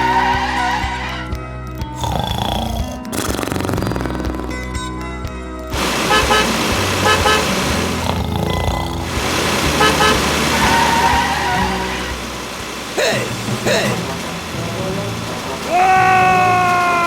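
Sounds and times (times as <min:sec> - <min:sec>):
background music: 0:00.0 - 0:17.0
car horn double toots: 0:06.1 - 0:07.6, 0:09.8 - 0:10.4.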